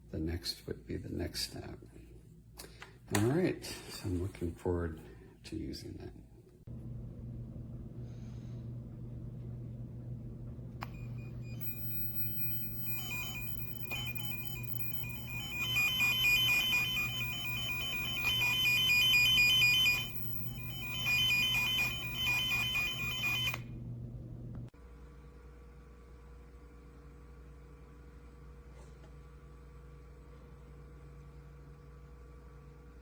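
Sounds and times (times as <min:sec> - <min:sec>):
steady low hum: 0:06.1 - 0:24.7
warbling beeping tracing tone: 0:10.9 - 0:23.6.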